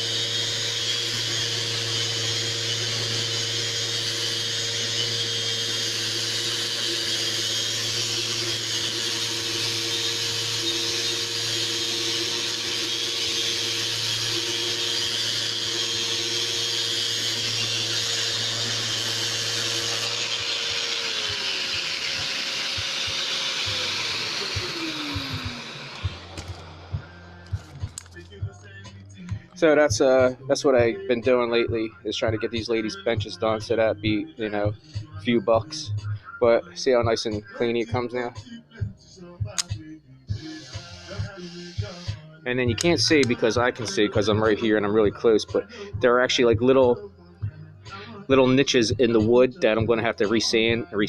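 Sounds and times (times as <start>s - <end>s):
dust extraction vacuum: 0.0s - 28.1s
electric sander running: 0.0s - 28.1s
motors spinning down: 0.0s - 28.1s.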